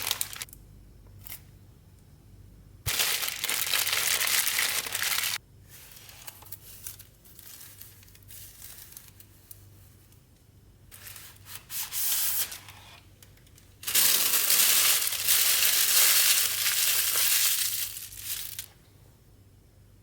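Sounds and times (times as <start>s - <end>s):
cardboard and plastic rustling: 13.8s - 18.7s.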